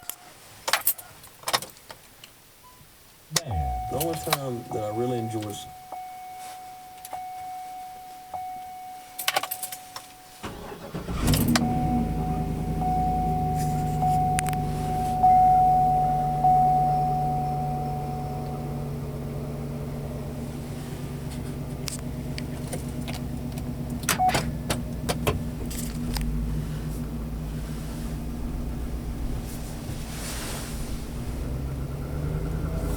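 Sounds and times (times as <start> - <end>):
steady high tone: 3.3 - 19.5
key and ignition click: 9.2 - 11.7, 24.0 - 26.3
engine cranking and starting: 10.4 - 15.2, 18.4 - 32.9.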